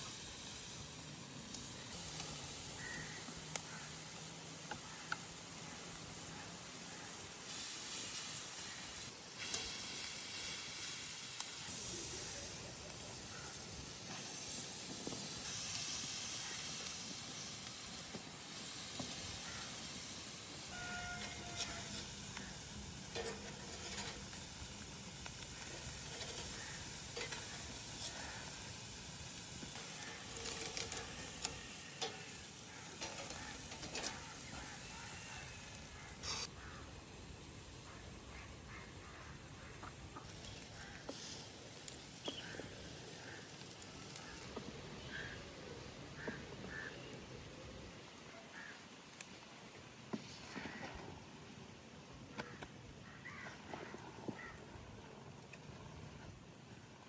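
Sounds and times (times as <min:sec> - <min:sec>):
food sizzling in hot oil: 0:00.0 - 0:45.4
stirring clicks and scrapes: 0:23.1 - 0:24.5, 0:25.2 - 0:28.4, 0:29.6 - 0:34.8.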